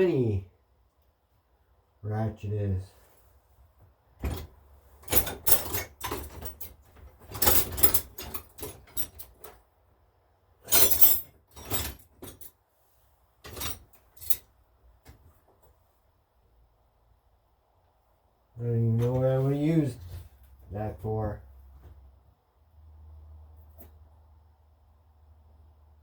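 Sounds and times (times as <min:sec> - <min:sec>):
metal hand tools clattering: 0:04.2 - 0:09.5, 0:10.6 - 0:12.5, 0:13.4 - 0:14.5.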